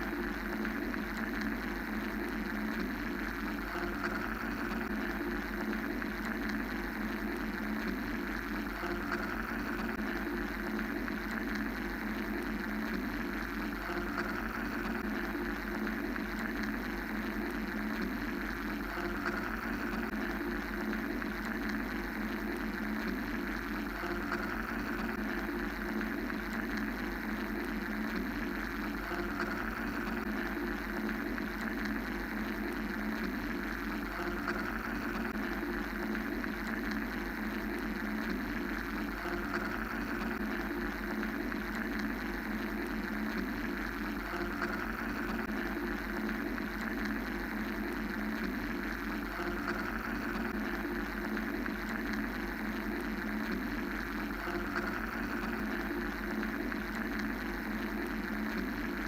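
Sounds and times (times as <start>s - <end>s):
mechanical white-noise drone: 0.0s - 59.0s.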